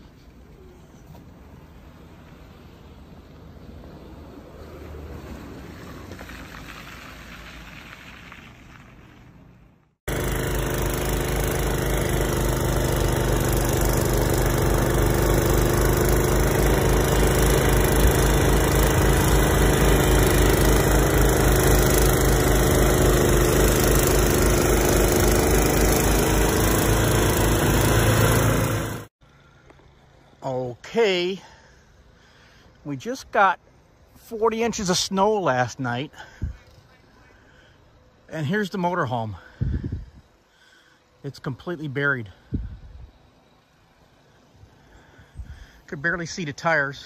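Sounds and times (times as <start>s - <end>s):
engine idling: 10.1s - 30.4s.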